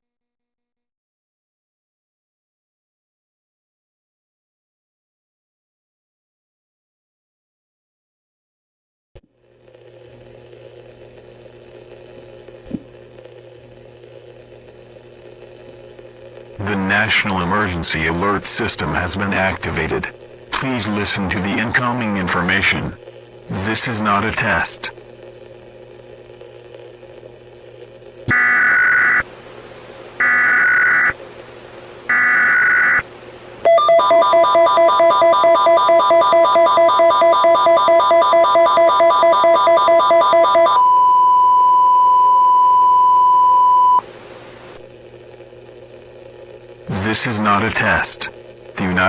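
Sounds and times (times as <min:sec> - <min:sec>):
steady electrical hum: 0:09.3 - 0:49.0
shrill buzzing data tones: 0:28.2 - 0:29.3, 0:30.2 - 0:31.2, 0:32.1 - 0:40.9
faint static hiss: 0:44.0 - 0:45.8.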